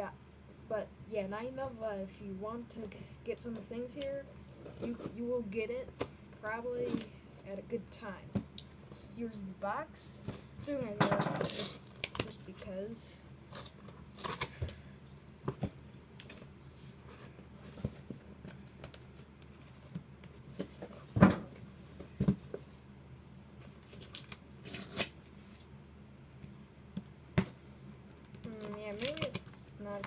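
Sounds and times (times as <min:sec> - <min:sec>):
cardboard cutting and tearing: 0:24.0 - 0:25.1.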